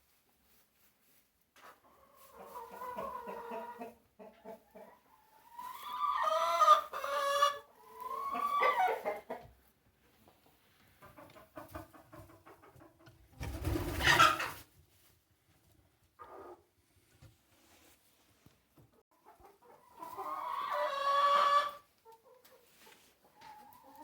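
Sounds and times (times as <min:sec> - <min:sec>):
chickens clucking: 0:01.6 - 0:14.8, 0:16.2 - 0:16.7, 0:19.1 - 0:24.0.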